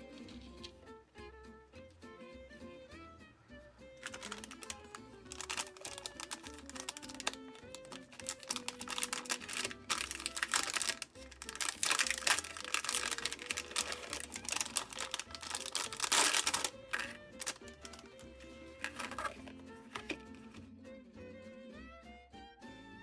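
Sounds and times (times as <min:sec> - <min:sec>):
gentle background music: 0:00.0 - 0:23.0
packaging crinkling and clicking: 0:04.0 - 0:20.6.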